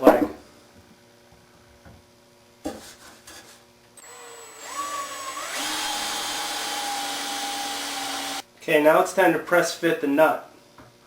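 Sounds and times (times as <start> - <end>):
power drill whining: 4.0 - 8.4.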